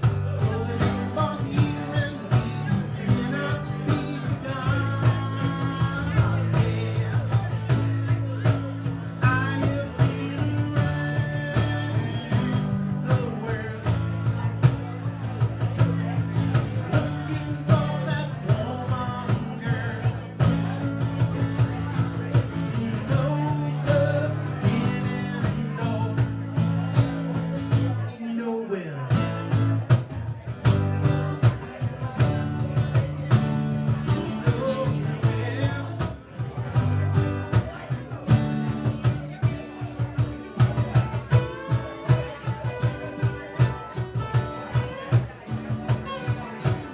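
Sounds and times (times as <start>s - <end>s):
rock blues band playing: 0.0s - 28.3s, 29.1s - 46.9s
guitar slide: 38.2s - 46.9s.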